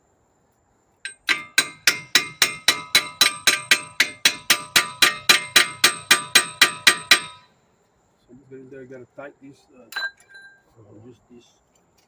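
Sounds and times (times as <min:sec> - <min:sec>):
hammer striking steel: 0:01.1 - 0:07.5.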